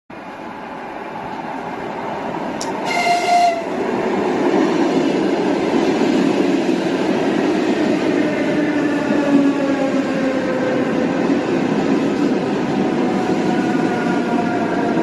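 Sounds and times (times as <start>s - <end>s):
train horn blast: 2.8s - 3.8s.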